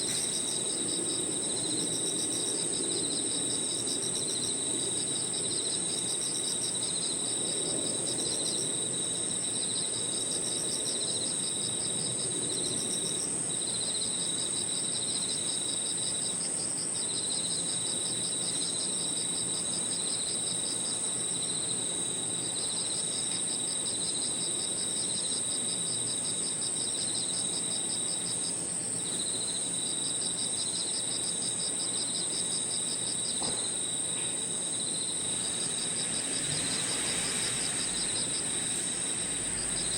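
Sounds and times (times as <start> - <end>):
high unbroken insect trill: 0.0 - 39.9
pulsing insect trills: 0.0 - 39.9.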